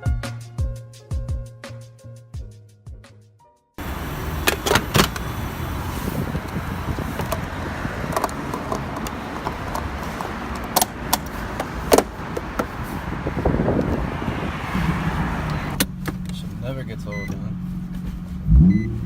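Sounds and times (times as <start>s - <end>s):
car engine rumbling: 3.8s - 19.0s
sharp clicks and knocks: 4.4s - 5.3s, 6.4s - 12.7s.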